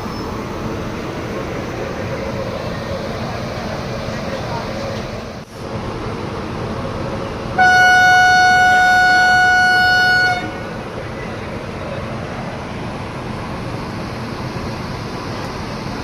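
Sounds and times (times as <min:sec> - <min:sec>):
train horn blast: 0:07.6 - 0:10.6.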